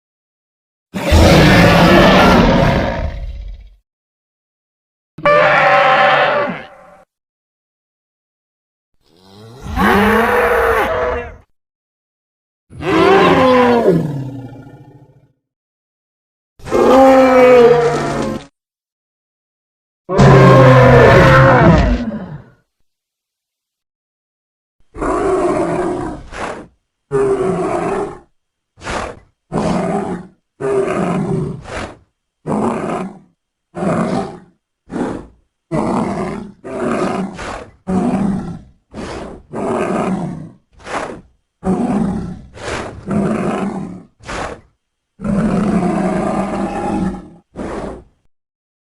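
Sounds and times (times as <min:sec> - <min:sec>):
creature roars and growls: 0:01.0 - 0:03.8, 0:05.2 - 0:07.1, 0:09.0 - 0:11.5, 0:12.7 - 0:15.4, 0:16.6 - 0:18.5, 0:20.1 - 0:22.6, 0:24.8 - 0:48.3.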